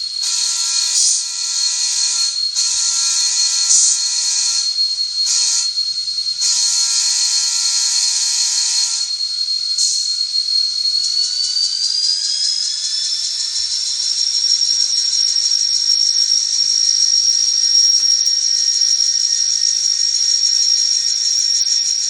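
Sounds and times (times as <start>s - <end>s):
steady high whine: 0.0s - 14.0s.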